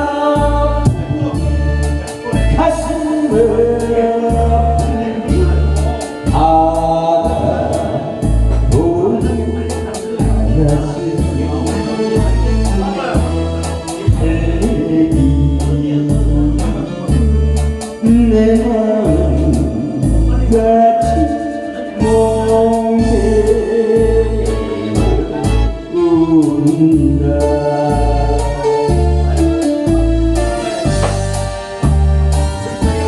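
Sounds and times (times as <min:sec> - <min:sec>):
music with steady bass beat: 0:00.0 - 0:33.0.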